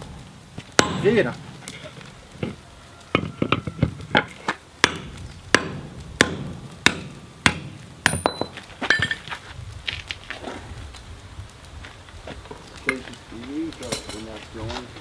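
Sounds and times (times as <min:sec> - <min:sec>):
metallic rings: 0:05.6 - 0:09.3, 0:13.8 - 0:14.3.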